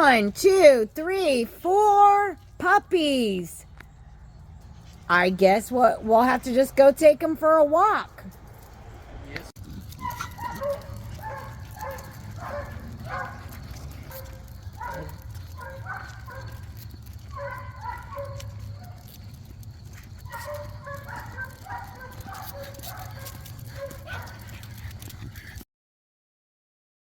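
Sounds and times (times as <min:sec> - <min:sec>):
puppies whining and yipping: 0:09.8 - 0:25.6.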